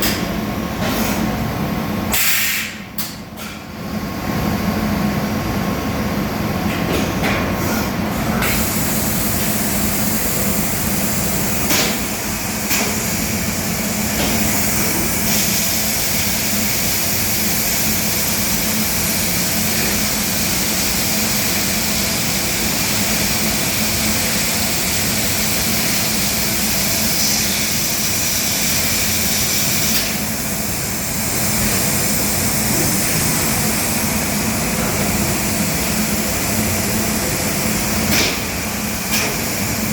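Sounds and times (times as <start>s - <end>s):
machine hum: 8.1s - 39.9s.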